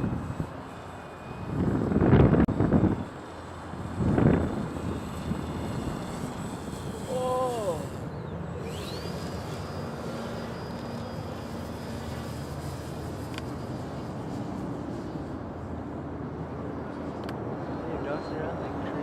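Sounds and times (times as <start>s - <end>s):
wind buffeting microphone: 0.0s - 10.2s
distant model airplane engine droning: 0.0s - 19.0s
thin high whine: 0.0s - 19.0s.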